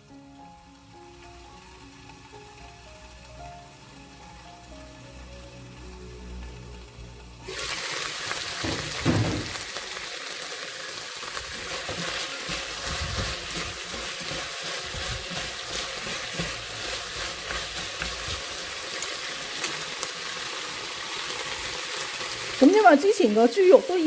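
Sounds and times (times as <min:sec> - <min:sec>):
food sizzling in a wok: 0:00.0 - 0:24.0
spatula knocking and scraping wok: 0:08.6 - 0:09.6, 0:11.4 - 0:19.8.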